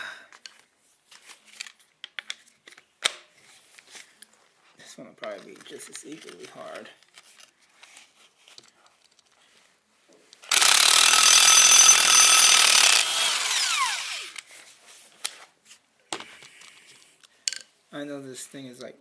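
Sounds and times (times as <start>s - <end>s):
impact wrench hammering: 10.5s - 14.1s.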